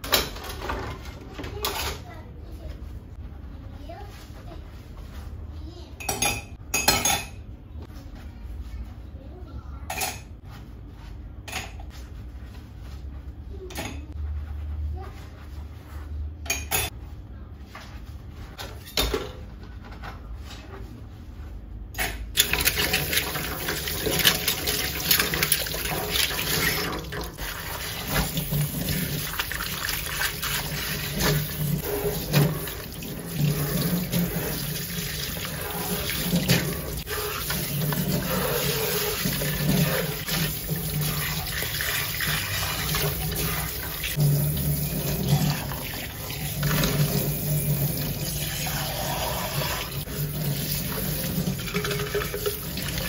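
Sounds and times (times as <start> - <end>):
tap water running into sink: 22.4 - 53.0.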